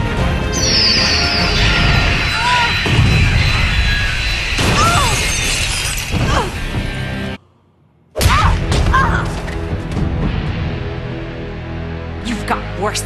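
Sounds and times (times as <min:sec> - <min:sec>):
background music: 0:00.0 - 0:03.8, 0:08.2 - 0:13.0
cartoon shattering and crashing: 0:02.8 - 0:06.7.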